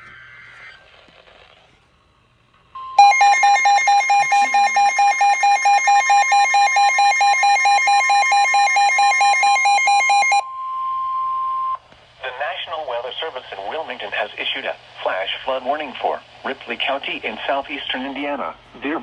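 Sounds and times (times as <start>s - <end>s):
electronic alarm beeping: 2.8s - 11.8s
steady warning alarm tone: 2.8s - 11.8s.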